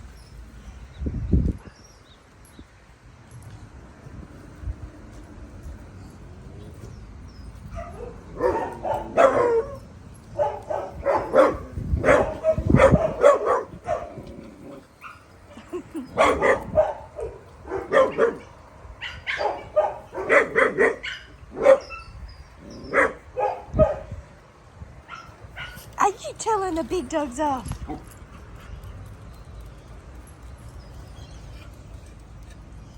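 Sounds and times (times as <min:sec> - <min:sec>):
small dogs barking: 0:07.8 - 0:14.2, 0:16.1 - 0:24.2, 0:25.1 - 0:25.9.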